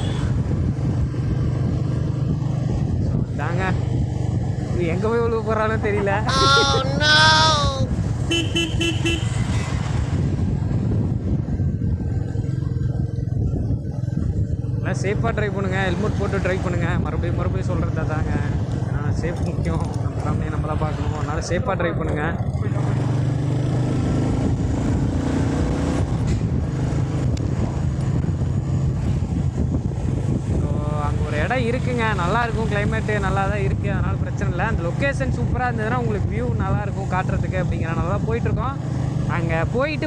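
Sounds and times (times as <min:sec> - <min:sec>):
motorcycle riding rumble: 0:00.0 - 0:40.0
wind: 0:00.0 - 0:40.0
vehicle horns honking: 0:08.3 - 0:09.6.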